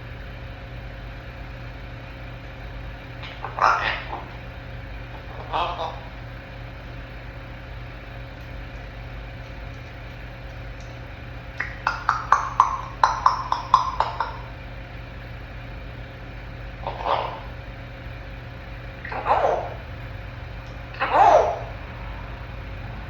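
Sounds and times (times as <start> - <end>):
steady low hum: 0.0 - 23.0
parrot clicking: 3.2 - 4.5, 8.3 - 14.6.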